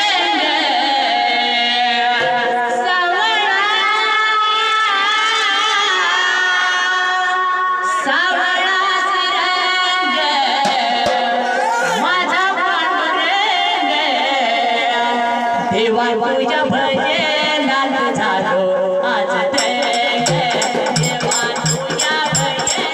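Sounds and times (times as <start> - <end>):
boy singing devotional song: 0.0 - 22.9.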